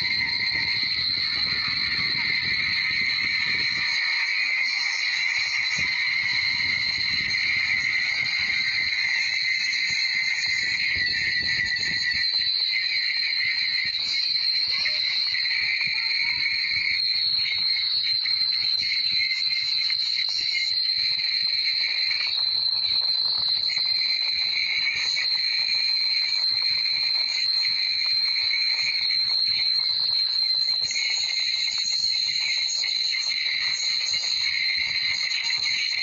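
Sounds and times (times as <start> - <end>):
insects chirring: 0.0 - 19.6.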